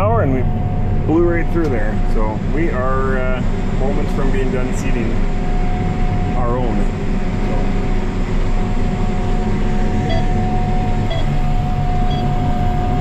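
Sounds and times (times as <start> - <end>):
tractor engine drone: 0.0 - 13.0
short electronic beeps: 10.0 - 11.4, 12.0 - 13.0.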